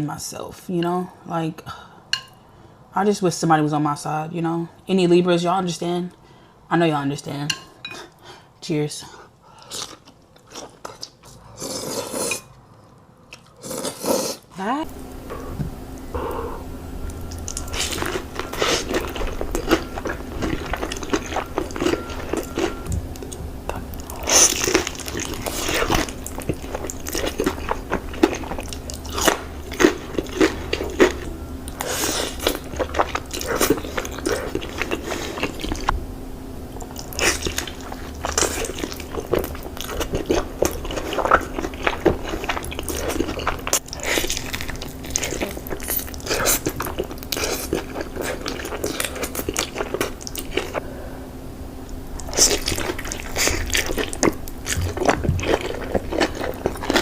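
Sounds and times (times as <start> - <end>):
chewing crispy food: 9.5 - 14.4, 17.1 - 35.9, 36.7 - 50.9, 51.8 - 57.0.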